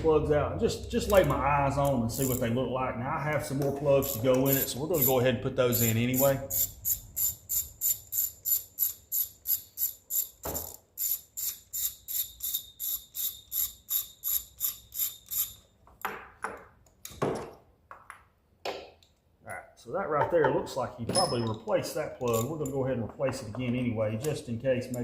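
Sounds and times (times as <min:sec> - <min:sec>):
ratchet wrench clicking: 0:01.0 - 0:02.5, 0:04.0 - 0:15.7, 0:22.2 - 0:22.8.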